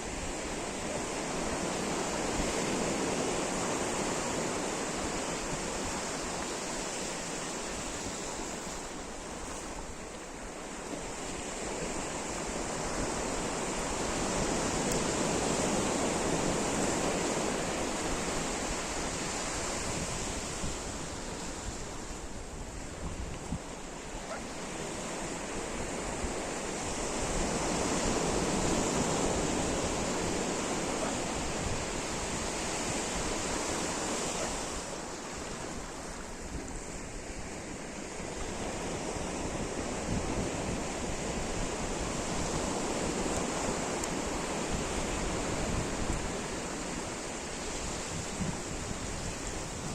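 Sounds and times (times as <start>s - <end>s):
sea surf breaking: 0.0s - 49.9s.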